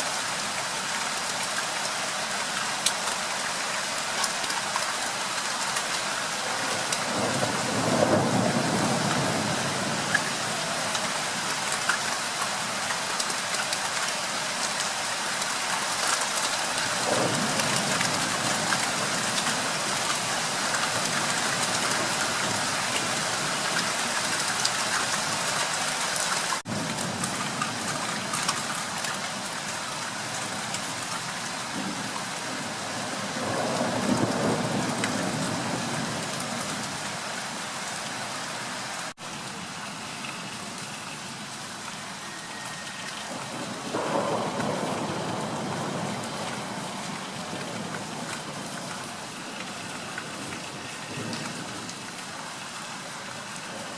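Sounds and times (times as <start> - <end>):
steady rain falling: 0.0 - 53.9
low thunder rumbling: 6.7 - 10.6, 31.7 - 36.8, 43.3 - 52.0.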